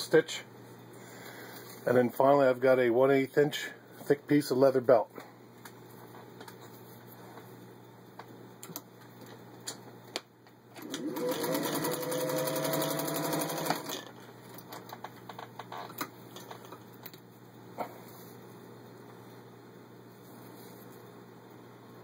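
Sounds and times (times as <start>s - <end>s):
sewing machine stitching leather: 10.8s - 14.2s.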